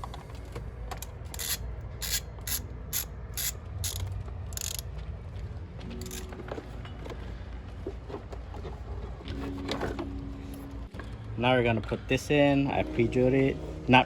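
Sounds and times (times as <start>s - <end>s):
hand ratchet clicking: 1.3s - 4.9s, 6.0s - 6.3s.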